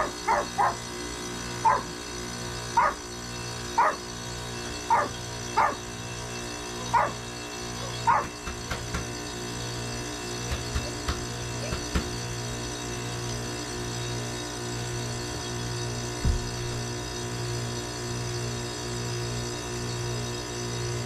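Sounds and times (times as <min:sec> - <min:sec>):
dog barking: 0:00.0 - 0:00.9, 0:01.6 - 0:02.0, 0:02.8 - 0:03.0, 0:03.8 - 0:04.0, 0:04.9 - 0:05.9, 0:06.8 - 0:07.2, 0:07.8 - 0:08.4
heat pump humming: 0:00.0 - 0:21.0.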